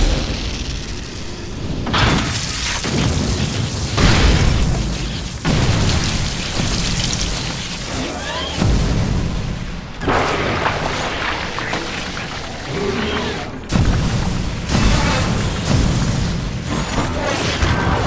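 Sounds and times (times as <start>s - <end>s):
explosion-like booms: 1.8s - 11.0s, 13.7s - 16.9s.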